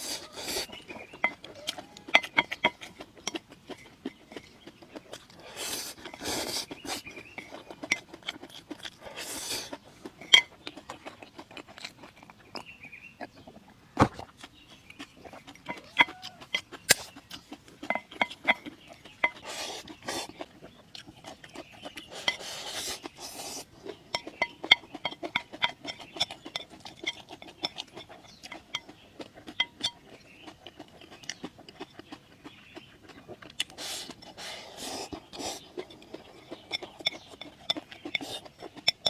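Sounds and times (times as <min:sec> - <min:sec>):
utensil clinking on a bowl: 0:24.1 - 0:30.0.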